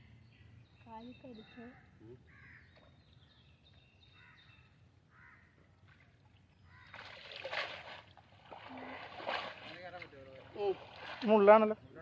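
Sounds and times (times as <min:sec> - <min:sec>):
crow cawing: 0:05.1 - 0:05.5
water splashing and sloshing: 0:05.6 - 0:12.0.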